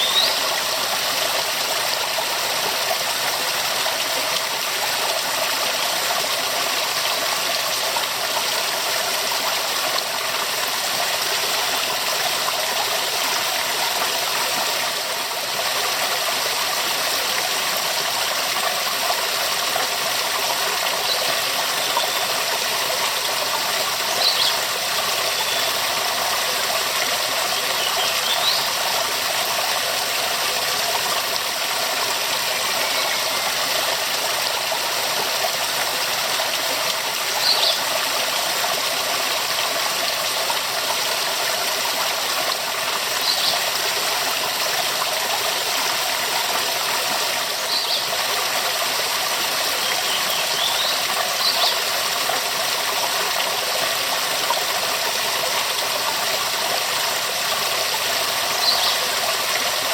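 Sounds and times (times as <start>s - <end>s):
waterfall rushing: 20.0s - 59.9s.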